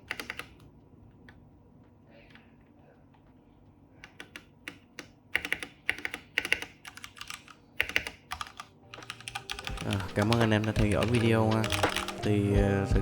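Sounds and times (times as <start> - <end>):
mechanical keyboard typing: 0.0 - 0.7, 4.0 - 12.5.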